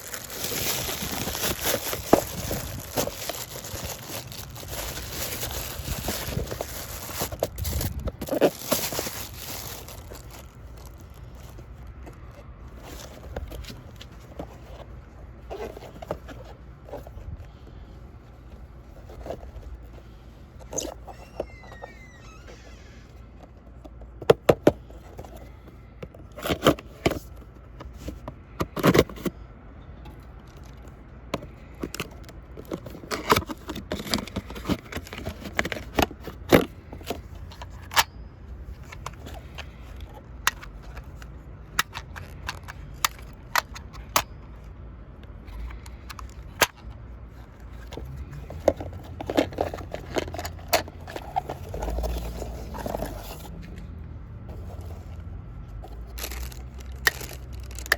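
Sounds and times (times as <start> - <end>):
plastic toy clicking and scraping: 0.0 - 14.9, 30.5 - 38.1, 38.7 - 55.2, 55.8 - 57.9.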